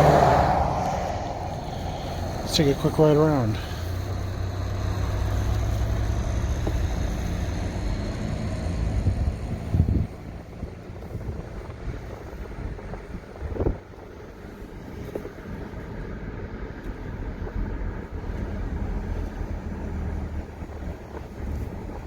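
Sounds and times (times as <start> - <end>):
wind buffeting microphone: 0.0 - 15.9
moving vehicle rumble: 0.0 - 22.0.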